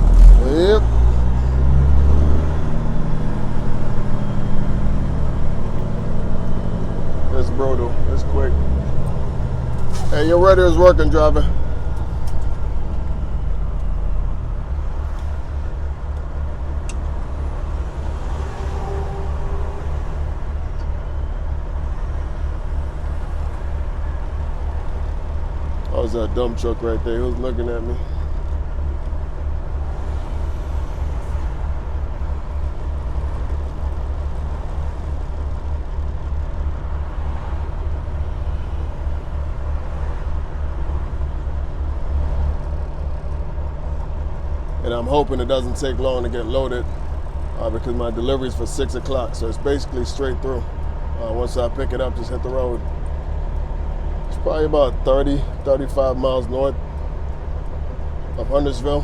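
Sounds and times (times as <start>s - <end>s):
truck engine and road noise: 0.0s - 59.0s.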